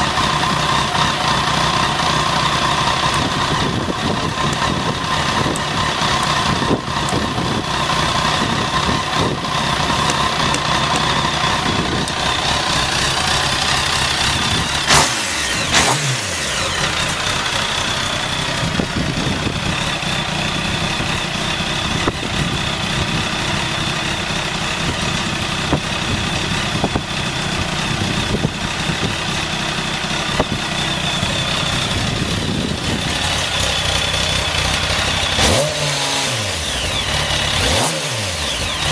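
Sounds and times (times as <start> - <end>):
motorcycle engine idling: 0.0 - 38.9
engine revving blip: 14.5 - 17.1, 35.2 - 38.9.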